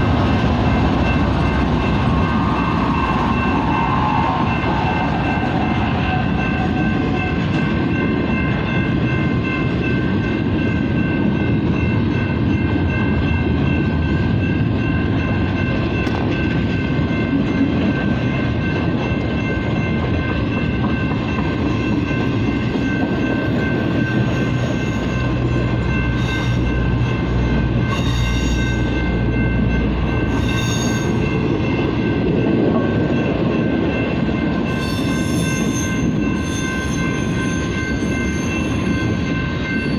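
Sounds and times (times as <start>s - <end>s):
freight train wheels rumbling: 0.0s - 39.9s
high-pitched wheel squeal: 27.9s - 28.9s, 30.3s - 31.2s, 34.7s - 39.2s.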